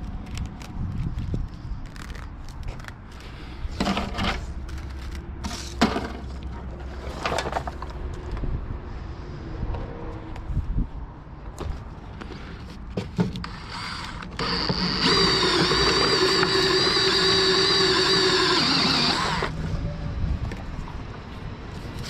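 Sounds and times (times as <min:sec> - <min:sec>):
power tool motor running: 0:13.4 - 0:19.5.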